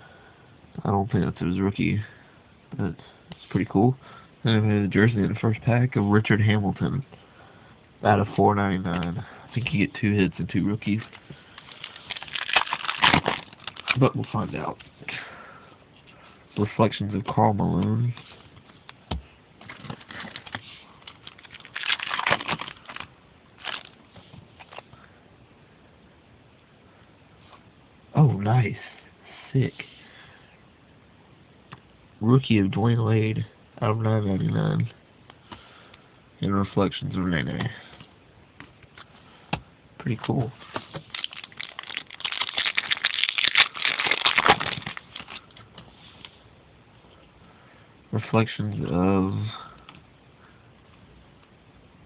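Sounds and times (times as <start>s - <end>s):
wrapper crinkling: 11.0s - 14.4s, 19.6s - 24.0s, 40.8s - 45.6s
cards rustling and sliding: 19.6s - 24.8s, 40.6s - 46.4s.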